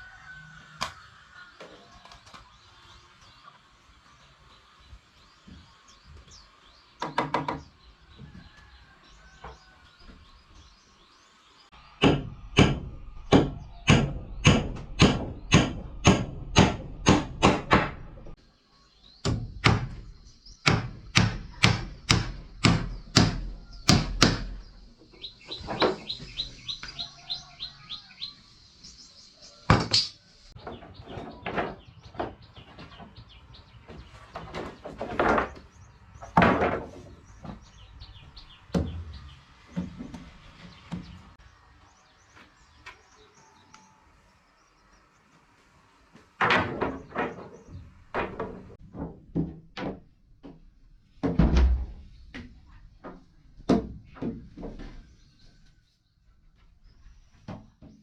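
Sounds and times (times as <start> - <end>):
bird chirping: 0.0 - 45.4
hammering on wood: 12.0 - 18.4, 19.2 - 24.8.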